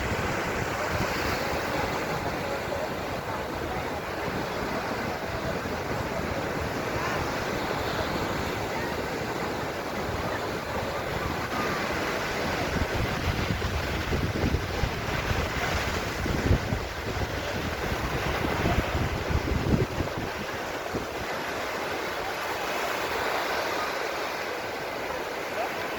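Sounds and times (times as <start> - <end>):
wind buffeting microphone: 0.0 - 21.3
waves washing onto beach: 0.0 - 25.9.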